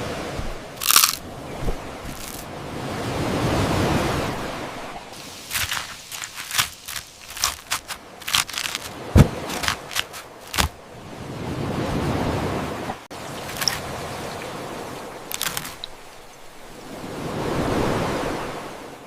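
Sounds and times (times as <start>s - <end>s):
cooking hiss: 5.2s - 7.3s.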